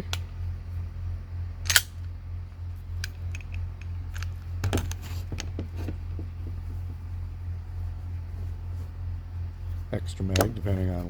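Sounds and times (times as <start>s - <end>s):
steady low hum: 0.0s - 11.0s
pistol metallic clicks: 1.6s - 2.1s, 3.0s - 5.0s, 10.3s - 10.6s.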